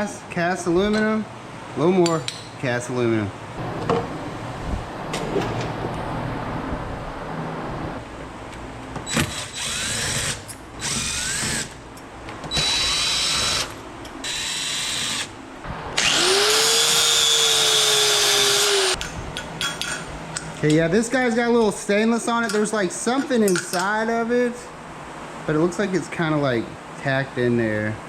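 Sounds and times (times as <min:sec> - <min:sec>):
power drill running: 0:09.1 - 0:11.8, 0:12.5 - 0:15.3, 0:16.0 - 0:19.0.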